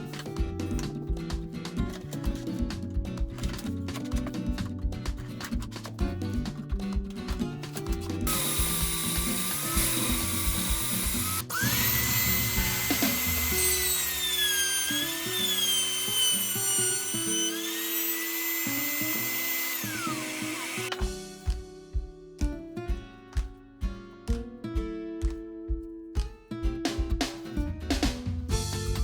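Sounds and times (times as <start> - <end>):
electric drill motor whining: 8.3 - 21.0.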